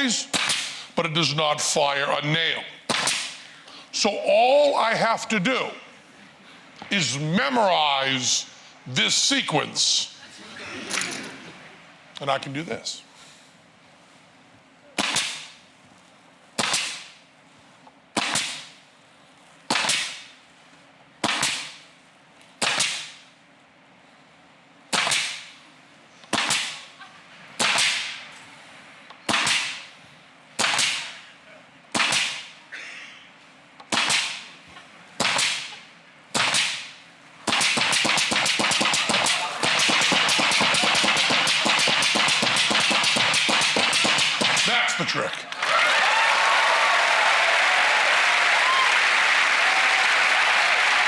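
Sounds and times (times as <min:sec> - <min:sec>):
pneumatic nail gun firing: 0:00.3 - 0:00.8, 0:02.9 - 0:03.4, 0:16.6 - 0:17.2, 0:18.2 - 0:18.8, 0:19.7 - 0:20.3, 0:21.2 - 0:21.8, 0:22.6 - 0:23.2, 0:24.9 - 0:25.5, 0:31.9 - 0:32.5, 0:35.2 - 0:36.9, 0:37.5 - 0:44.7
applause: 0:45.5 - 0:51.0.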